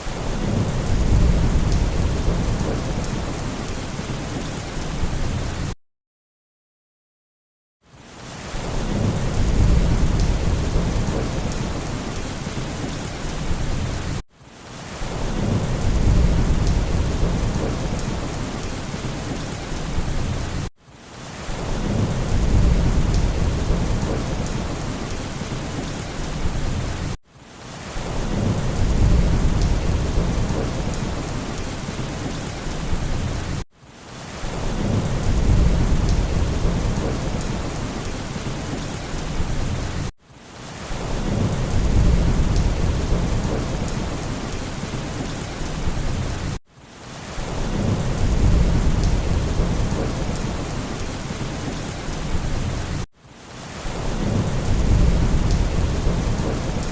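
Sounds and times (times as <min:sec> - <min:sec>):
thunder rumbling: 0:00.2 - 0:03.7, 0:08.7 - 0:14.1, 0:15.1 - 0:20.7, 0:21.6 - 0:27.1, 0:28.1 - 0:33.6, 0:34.5 - 0:40.1, 0:41.0 - 0:46.6, 0:47.5 - 0:53.0, 0:54.0 - 0:56.9
heavy rain hissing: 0:08.1 - 0:56.9.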